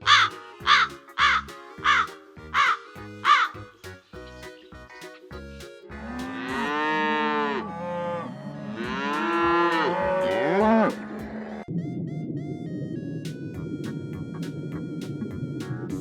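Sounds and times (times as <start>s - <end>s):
light background music: 0.0s - 16.0s
cow mooing: 6.0s - 11.6s.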